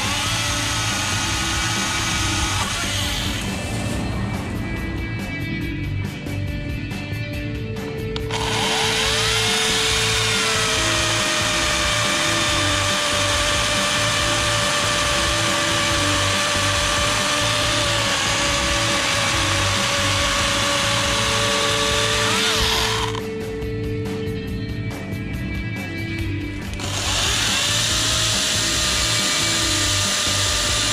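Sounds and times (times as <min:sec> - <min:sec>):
cordless chainsaw whine: 0:00.0 - 0:03.8, 0:08.2 - 0:23.3, 0:26.7 - 0:30.9.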